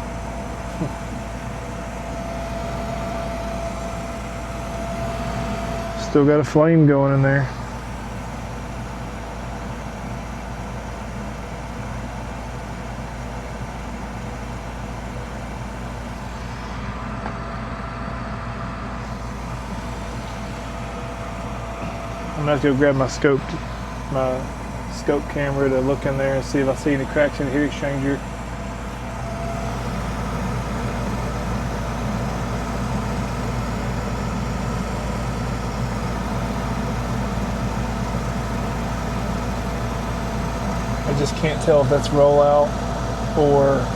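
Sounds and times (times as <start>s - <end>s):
faint whine: 0.0s - 6.5s
gas furnace humming: 0.0s - 43.9s.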